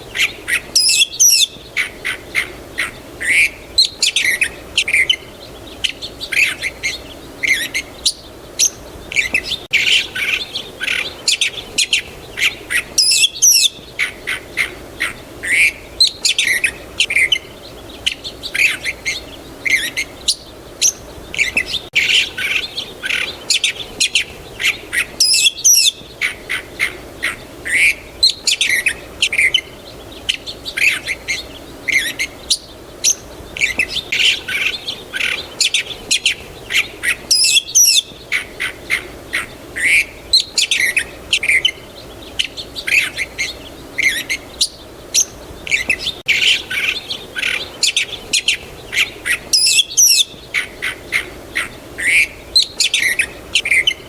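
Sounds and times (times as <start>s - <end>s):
birds chirping and singing: 0.0s - 54.0s
low background noise: 0.0s - 54.0s.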